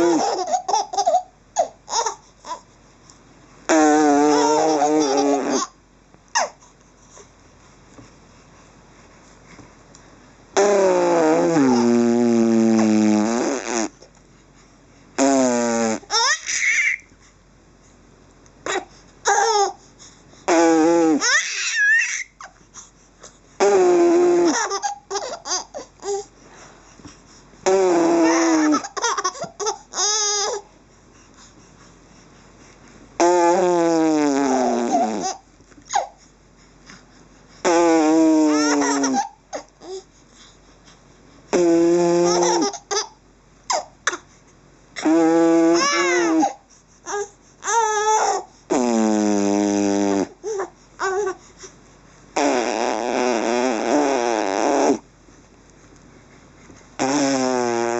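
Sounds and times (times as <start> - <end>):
baby laughing: 0.0 - 2.6, 4.2 - 5.7, 16.1 - 17.0, 24.4 - 26.2, 28.1 - 30.6, 38.5 - 39.4, 42.2 - 43.9, 45.7 - 46.6.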